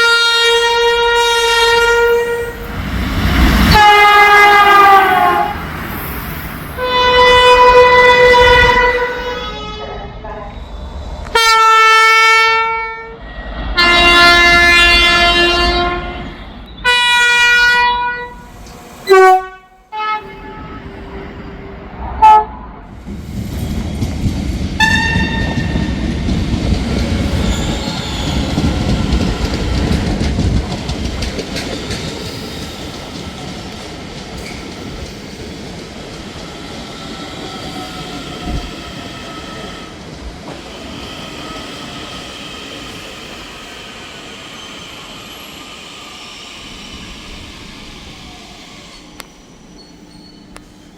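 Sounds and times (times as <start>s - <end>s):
train horn blasts: 0.0s - 2.7s, 3.7s - 5.7s, 6.8s - 10.6s, 11.3s - 22.7s, 24.8s - 25.9s
train wheels rumbling: 0.0s - 50.9s.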